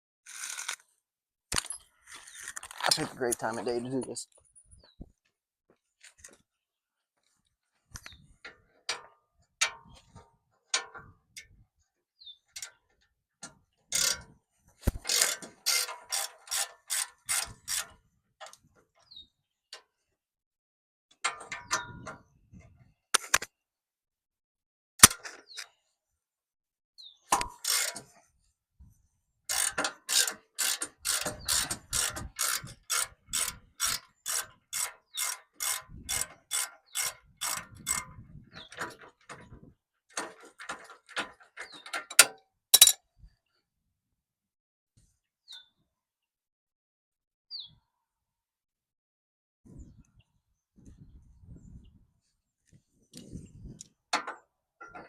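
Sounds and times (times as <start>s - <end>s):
ratchet wrench clicking: 13.9s - 14.2s, 15.0s - 17.9s, 27.4s - 28.0s, 29.5s - 38.0s
knocks of metal tools: 40.2s - 43.0s.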